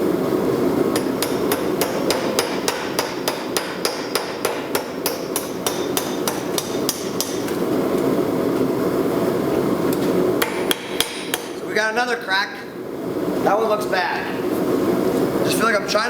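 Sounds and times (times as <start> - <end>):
hammer striking steel on anvil: 1.0 - 7.6, 10.4 - 11.6.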